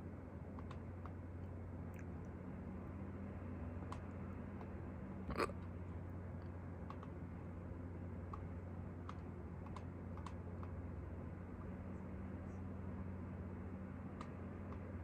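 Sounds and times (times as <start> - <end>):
steady low hum: 0.0 - 15.0
sharp hiccup: 5.2 - 5.6.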